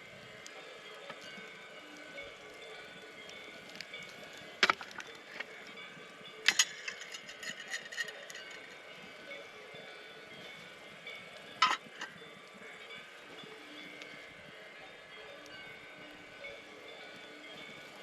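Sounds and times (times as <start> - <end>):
faint ringing tones: 0.0 - 18.0
sharp ringing clinks: 1.2 - 14.0.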